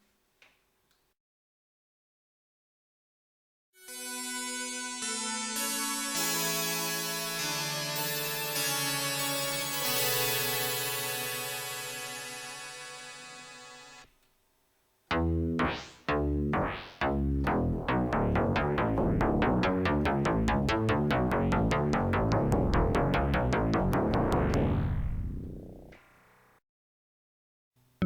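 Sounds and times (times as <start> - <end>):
synthesizer notes: 15.1 - 25.9.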